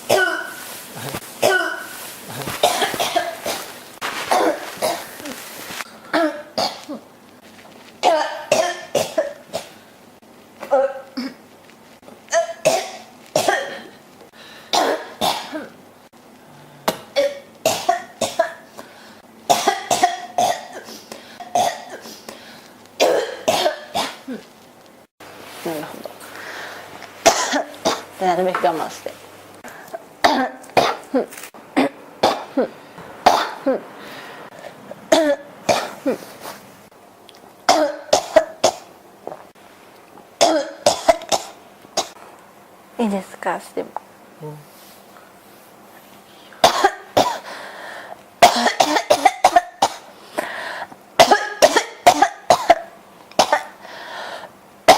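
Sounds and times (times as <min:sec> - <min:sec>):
person coughing: 0:00.1 - 0:07.0, 0:08.0 - 0:09.8, 0:12.3 - 0:14.0, 0:14.7 - 0:15.8, 0:19.5 - 0:22.2, 0:23.0 - 0:24.5, 0:27.3 - 0:28.0, 0:30.2 - 0:32.7, 0:46.6 - 0:47.5, 0:48.4 - 0:50.1, 0:51.2 - 0:53.8.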